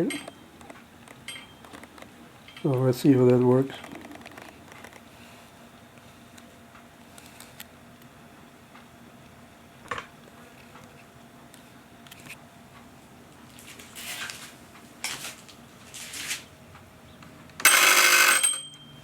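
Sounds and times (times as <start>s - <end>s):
rasping doorbell buzzes: 17.6s - 19.0s.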